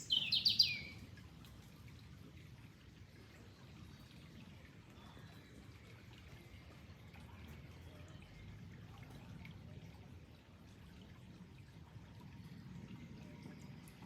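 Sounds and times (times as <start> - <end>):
high bird chirps: 0.0 - 1.0
faint water trickling: 0.0 - 14.0.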